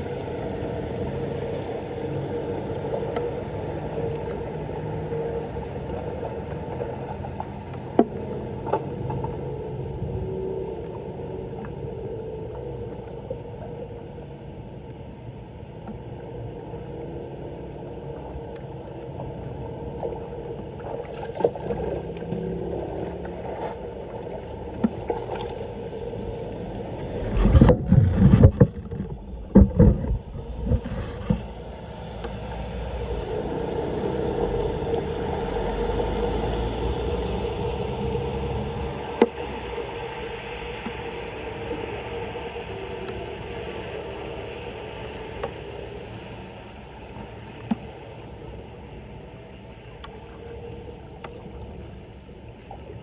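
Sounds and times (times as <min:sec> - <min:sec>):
water rushing into drain: 0:20.8 - 0:45.1.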